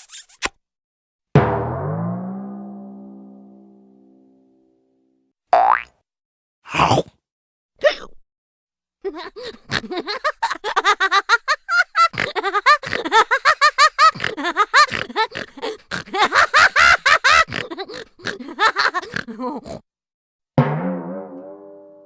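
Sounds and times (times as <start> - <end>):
cartoon laughing bursts: 9.4 - 19.7.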